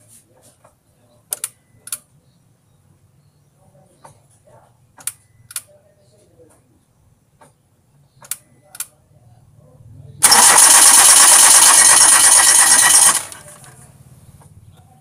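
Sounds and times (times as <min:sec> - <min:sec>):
starter cranking engine: 0:10.2 - 0:13.8.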